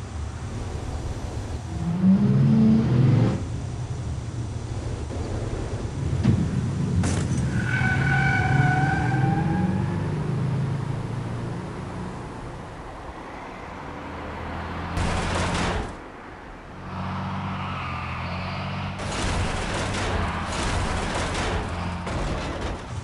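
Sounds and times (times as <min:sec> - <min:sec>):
vehicle rumble: 0:00.0 - 0:23.0
rapid gunfire: 0:15.0 - 0:16.0, 0:19.0 - 0:23.0.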